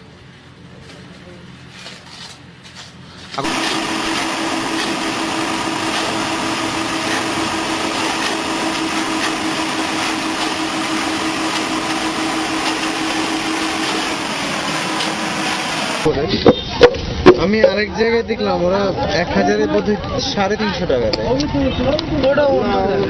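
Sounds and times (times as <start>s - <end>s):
engine running with hiss: 3.4s - 16.1s.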